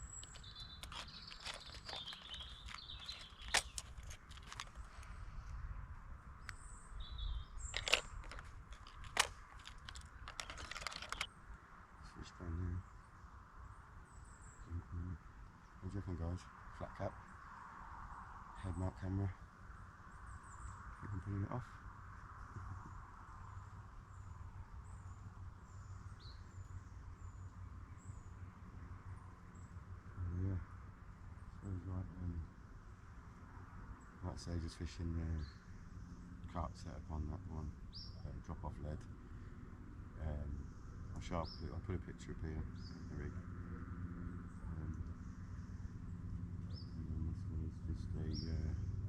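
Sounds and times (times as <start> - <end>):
high bird chirps: 0.0 - 5.0
sharp clicks and knocks: 0.0 - 5.0, 7.7 - 11.3
small bird chirping: 0.0 - 5.2, 6.4 - 11.4
low wind rumble: 0.0 - 49.0.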